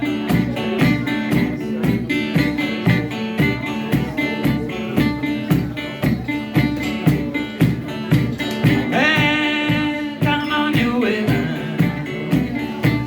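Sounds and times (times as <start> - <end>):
instrumental blues country music: 0.0 - 13.0
resonator guitar plucked: 0.0 - 13.0.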